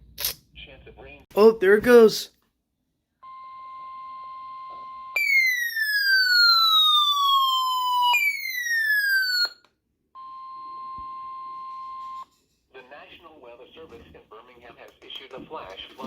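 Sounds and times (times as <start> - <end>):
falling siren-like whoops: 4.8 - 9.6.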